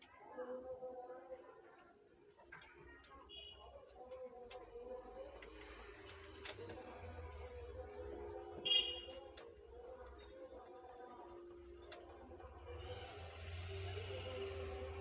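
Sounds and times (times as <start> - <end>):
crickets chirping: 0.0 - 15.0
faint clicks: 4.0 - 4.8.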